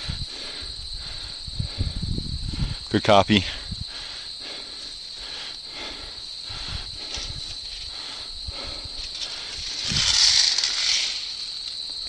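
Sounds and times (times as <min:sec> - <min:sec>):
steady high hiss: 0:00.0 - 0:12.0
rustling noise: 0:08.8 - 0:12.0.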